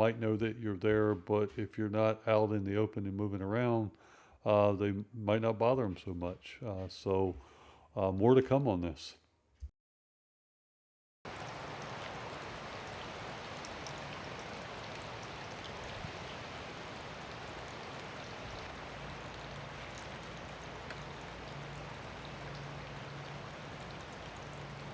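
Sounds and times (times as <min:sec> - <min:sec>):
hard rain hissing: 0:11.3 - 0:24.9
single raindrops ticking: 0:11.3 - 0:24.9.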